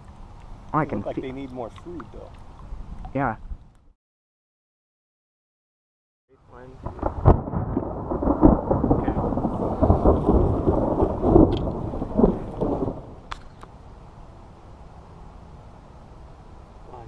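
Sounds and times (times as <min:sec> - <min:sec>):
thunder rumble: 0:06.5 - 0:13.3.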